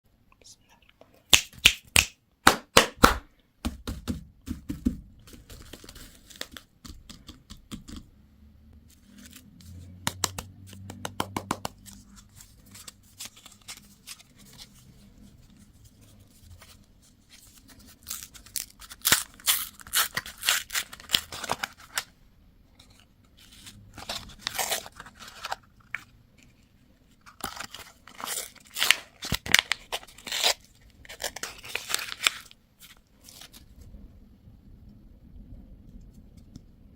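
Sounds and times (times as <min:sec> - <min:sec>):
plastic wrappers crinkling and tearing: 0:11.8 - 0:15.0, 0:17.3 - 0:22.1, 0:23.4 - 0:26.1, 0:27.2 - 0:33.7.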